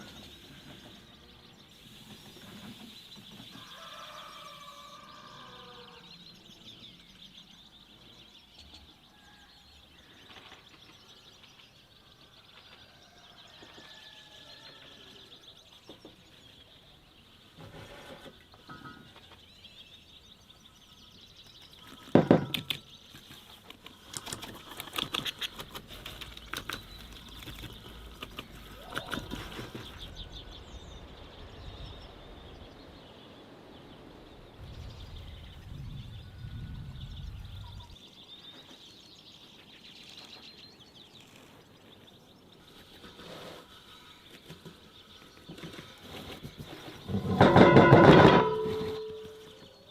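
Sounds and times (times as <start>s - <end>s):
birds chirping faintly: 0.0s - 49.9s
clattering and scraping: 17.6s - 19.4s, 45.5s - 49.6s.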